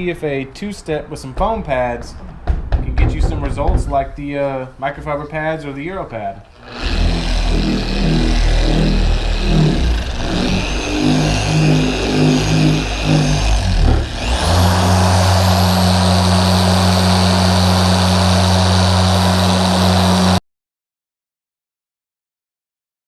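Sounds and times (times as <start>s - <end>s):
electric polisher motor whining: 6.5s - 20.4s.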